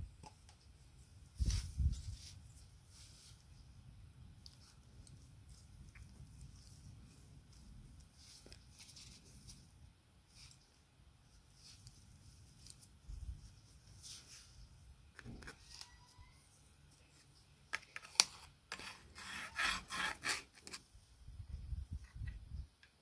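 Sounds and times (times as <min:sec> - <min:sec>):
filing strokes: 0:18.7 - 0:20.8.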